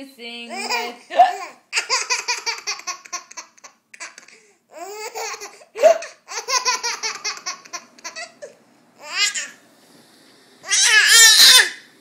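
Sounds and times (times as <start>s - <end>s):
baby laughing: 0.5s - 9.6s.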